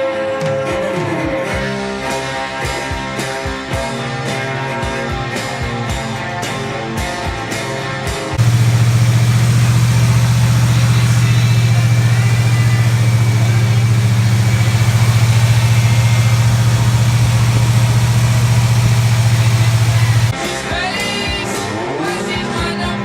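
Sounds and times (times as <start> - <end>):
music: 0.0 - 18.0, 19.4 - 23.0
car engine idling: 8.4 - 20.3.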